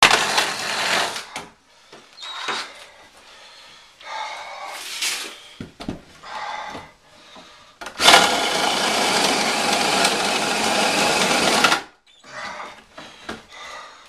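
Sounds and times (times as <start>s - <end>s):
handheld power tool running: 0.0s - 1.3s, 7.9s - 11.9s.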